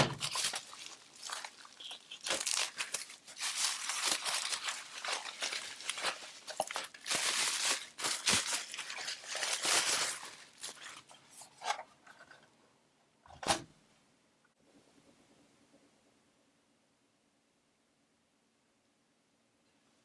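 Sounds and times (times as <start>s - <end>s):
packaging crinkling and rustling: 0.0s - 12.4s.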